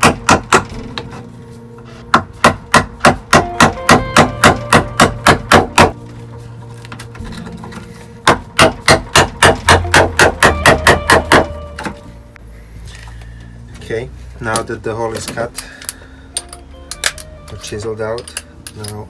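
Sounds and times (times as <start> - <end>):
chisel striking wood: 0.0 - 1.2, 2.0 - 6.0, 8.2 - 12.0.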